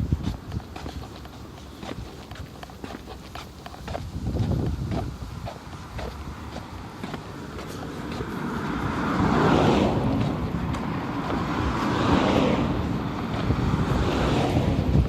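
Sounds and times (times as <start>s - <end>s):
cars passing on street: 0.0s - 15.0s.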